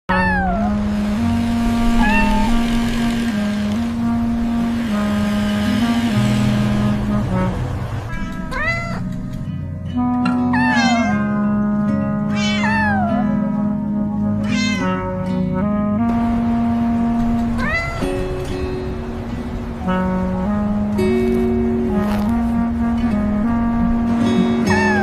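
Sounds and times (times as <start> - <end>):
cat meowing: 0.1 - 0.8, 1.9 - 2.7, 8.1 - 9.2, 10.5 - 11.4, 12.3 - 13.5, 14.4 - 15.1, 17.6 - 18.3, 24.7 - 25.0
background music: 0.1 - 25.0.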